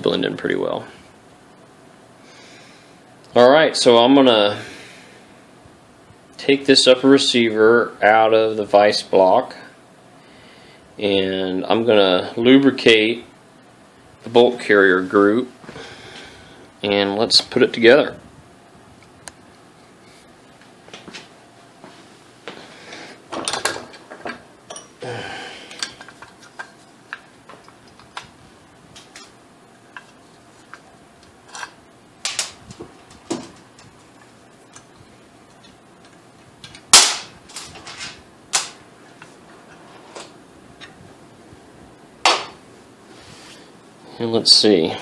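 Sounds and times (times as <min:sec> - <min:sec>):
metal parts clicking and clacking: 0:31.5 - 0:32.6.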